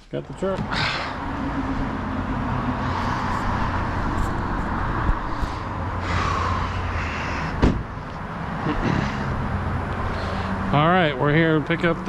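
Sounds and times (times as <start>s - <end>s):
car engine and road noise: 0.0s - 12.0s.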